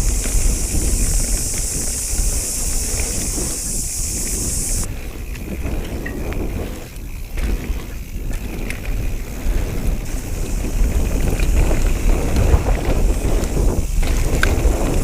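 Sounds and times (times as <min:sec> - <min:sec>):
steady high hiss: 0:00.0 - 0:04.9, 0:10.1 - 0:15.0
wind buffeting microphone: 0:00.0 - 0:15.0.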